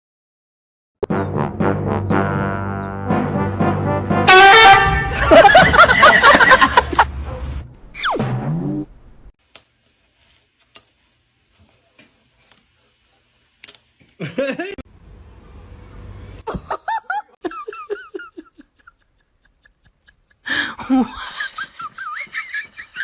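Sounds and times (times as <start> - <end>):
person laughing: 5.0 - 7.1, 14.2 - 14.8, 16.4 - 23.0.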